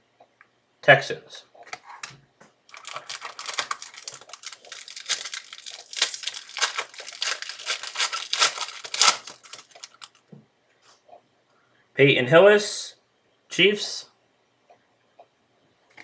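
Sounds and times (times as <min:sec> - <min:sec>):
plastic wrapper crinkling and tearing: 0:02.7 - 0:10.2.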